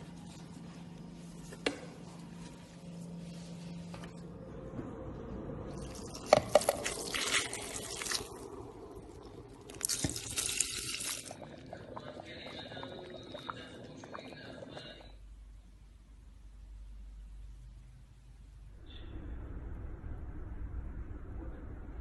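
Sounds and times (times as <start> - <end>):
water trickling: 5.8 - 15.1
water running and splashing: 6.0 - 12.0.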